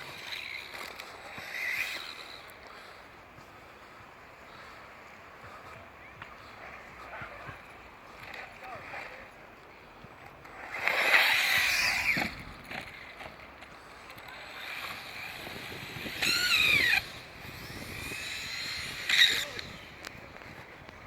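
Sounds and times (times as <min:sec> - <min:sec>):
toy car motor whining: 0:00.0 - 0:03.0, 0:10.6 - 0:13.2, 0:14.3 - 0:20.6.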